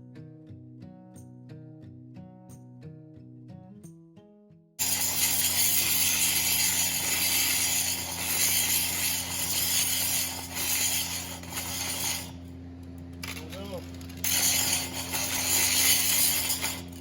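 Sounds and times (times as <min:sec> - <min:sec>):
angle grinder grinding metal: 0:04.8 - 0:12.6, 0:13.2 - 0:17.0.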